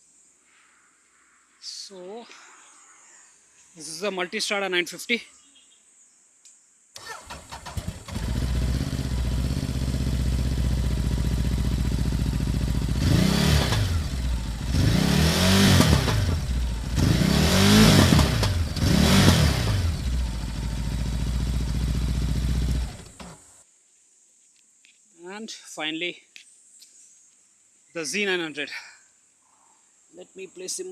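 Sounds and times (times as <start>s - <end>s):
motorcycle starter cranking: 7.0s - 9.4s, 21.7s - 23.5s
motorcycle engine idling: 7.3s - 14.9s, 15.5s - 23.5s.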